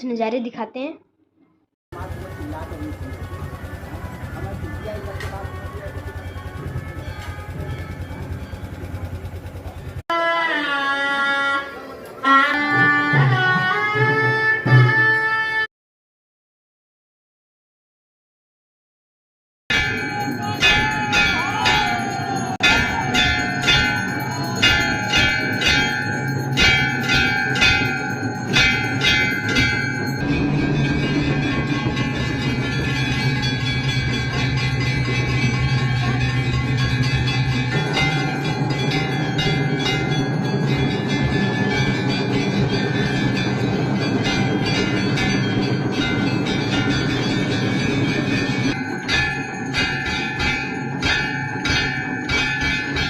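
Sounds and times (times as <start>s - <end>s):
rapidly fluttering low rumble: 2.0s - 10.0s
temple bells ringing: 2.0s - 10.0s, 19.7s - 53.0s
music playing: 10.3s - 15.6s, 19.7s - 36.2s.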